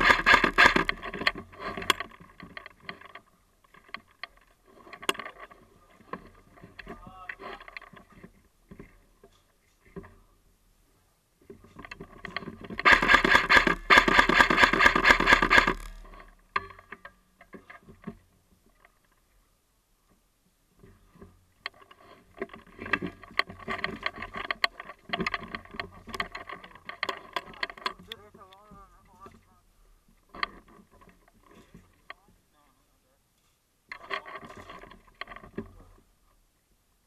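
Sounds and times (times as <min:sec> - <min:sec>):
airsoft gun full-auto burst: 0:00.0 - 0:00.9, 0:12.8 - 0:16.0
clicks and knocks: 0:00.0 - 0:10.2, 0:11.5 - 0:19.2, 0:20.8 - 0:32.4.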